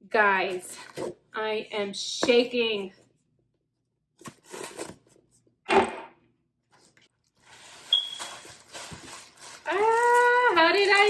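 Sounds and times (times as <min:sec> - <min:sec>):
package wrapping crinkling and tearing: 0:07.2 - 0:11.0.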